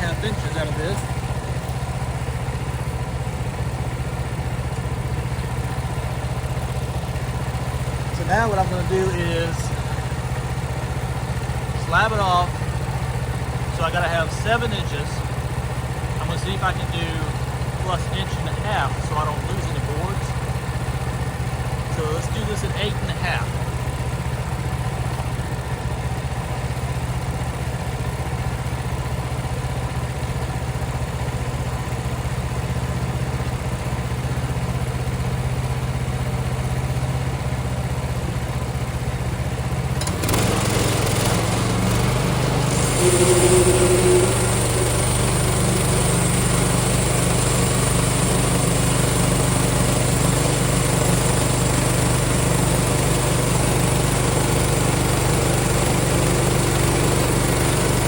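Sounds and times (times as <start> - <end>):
small gas engine running: 0.0 - 58.0
band saw blade hissing: 40.2 - 47.8.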